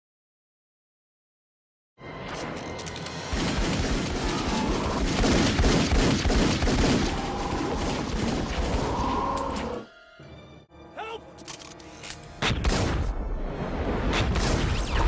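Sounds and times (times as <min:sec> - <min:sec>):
rapid gunfire: 0:03.3 - 0:08.8.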